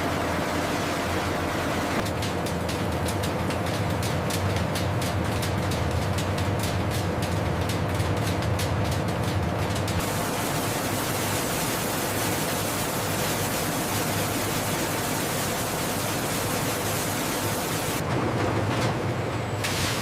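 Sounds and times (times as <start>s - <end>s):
rhythmic mechanical clicking: 2.0s - 18.0s
steady rushing hiss: 10.0s - 18.0s.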